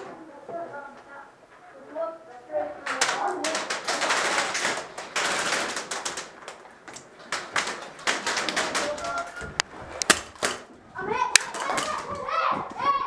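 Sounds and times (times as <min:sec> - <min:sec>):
sharp crack: 0:02.8 - 0:10.7, 0:11.3 - 0:12.1.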